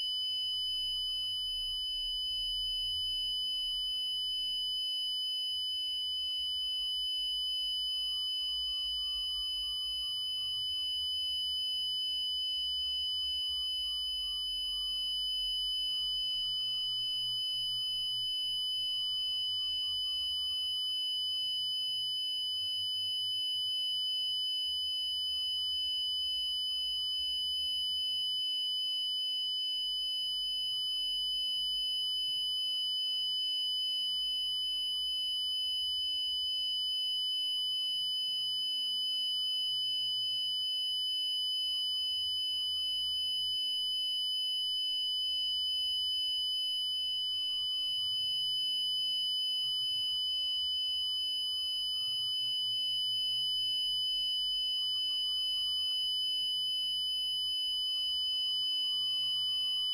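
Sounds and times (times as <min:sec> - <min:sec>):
fainter higher steady tone: 0:00.0 - 0:59.9
high-pitched sine tone: 0:00.0 - 0:59.9.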